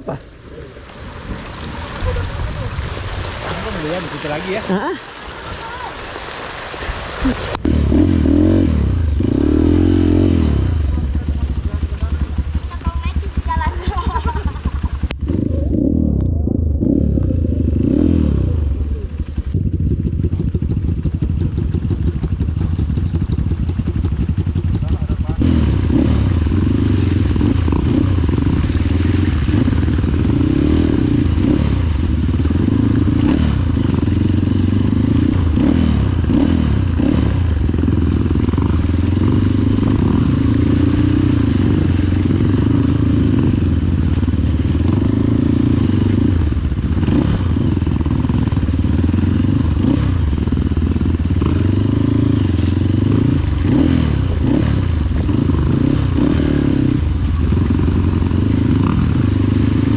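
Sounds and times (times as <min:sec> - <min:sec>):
motorcycle engine revving: 0:07.2 - 0:59.9
bike knocks and rattles: 0:19.6 - 0:25.4.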